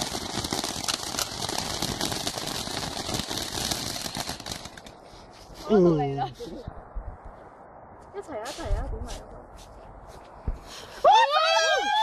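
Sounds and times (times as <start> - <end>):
firework hissing and crackling: 0.0 - 5.4.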